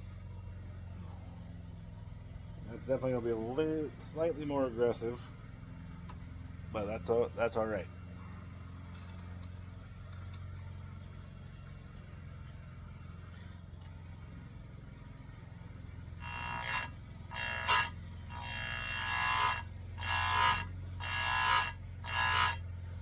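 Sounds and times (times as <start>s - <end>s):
grinding wheel hissing on chain: 0.9s - 10.8s, 12.7s - 23.0s
grinder motor humming: 15.0s - 23.0s.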